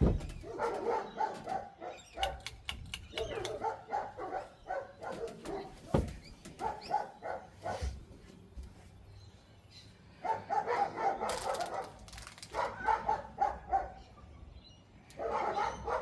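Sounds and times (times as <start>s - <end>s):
low thump: 0.0s - 0.5s
dogs barking: 0.2s - 8.0s, 10.2s - 14.3s, 15.1s - 16.0s.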